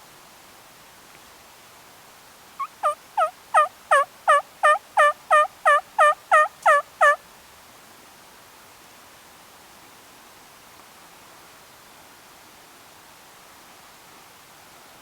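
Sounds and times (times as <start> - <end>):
turkey yelping: 2.6 - 7.2.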